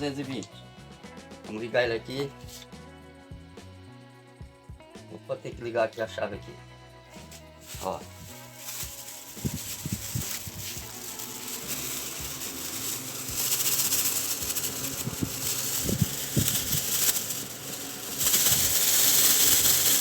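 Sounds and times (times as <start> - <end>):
electric fan running: 8.2 - 20.0.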